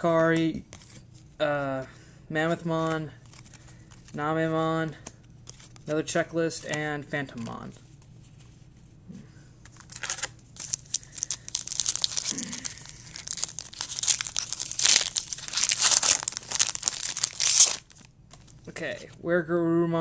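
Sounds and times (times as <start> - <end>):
wrapper crinkling and tearing: 3.2 - 4.2, 9.8 - 18.6.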